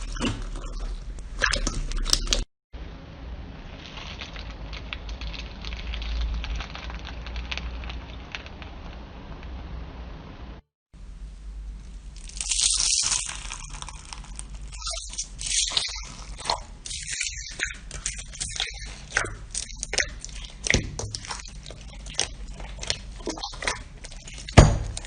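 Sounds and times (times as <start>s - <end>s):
slime crackles and squishy pops: 3.9s - 9.0s, 12.2s - 25.0s
hissy squelch: 14.6s - 25.0s.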